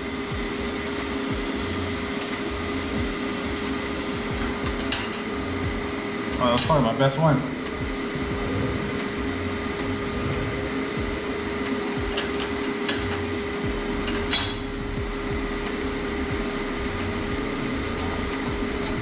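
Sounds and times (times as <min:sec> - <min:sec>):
machine hum and fan noise: 0:00.0 - 0:19.0.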